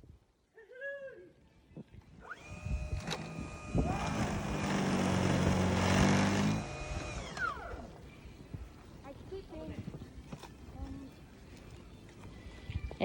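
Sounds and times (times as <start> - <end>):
motor whining: 2.2 - 8.0.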